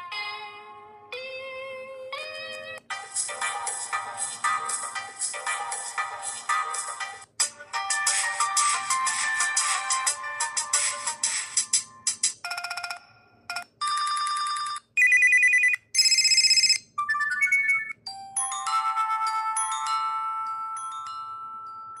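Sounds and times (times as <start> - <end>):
phone ringtones and notification tones: 12.5 - 22.0
electronic trills and beeps: 15.0 - 18.0
ringing chime: 16.0 - 22.0.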